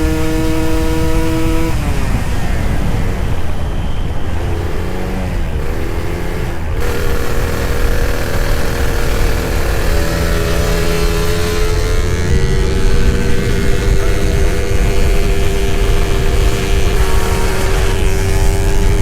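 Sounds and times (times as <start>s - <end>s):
two-stroke motorcycle engine: 0.0s - 19.0s
wind rumble on microphone: 0.0s - 19.0s.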